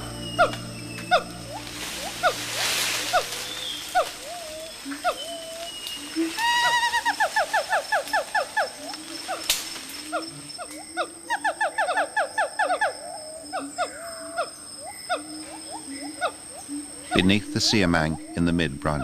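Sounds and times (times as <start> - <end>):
high-pitched hum: 0.0 - 4.4
ape hooting calls: 0.0 - 19.0.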